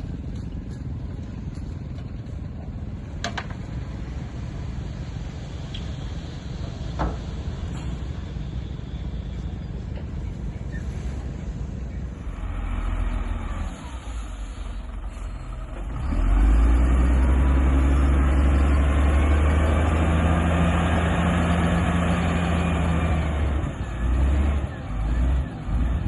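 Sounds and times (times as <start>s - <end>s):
faint whine: 0.0s - 15.9s
heavy diesel engine running: 0.0s - 26.0s.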